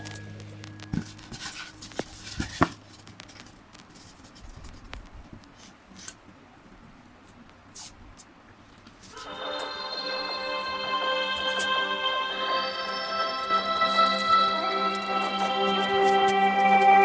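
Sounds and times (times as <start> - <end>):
faint scratching: 0.0 - 6.2.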